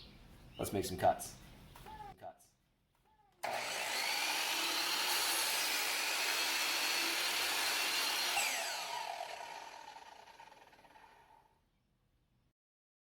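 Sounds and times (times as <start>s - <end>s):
electric saw cutting wood: 3.4s - 11.4s.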